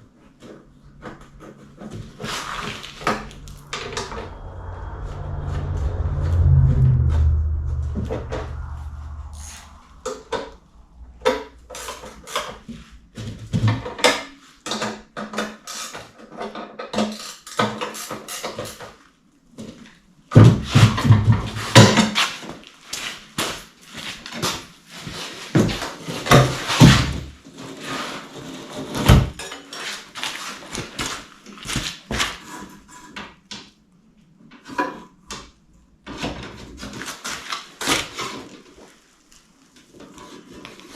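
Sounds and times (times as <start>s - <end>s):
low rumble: 1.3s - 12.3s.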